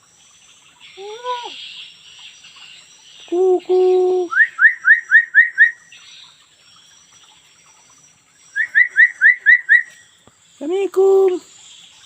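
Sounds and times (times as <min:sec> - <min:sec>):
bird giving rising whistles: 0:04.3 - 0:05.8, 0:08.6 - 0:10.0.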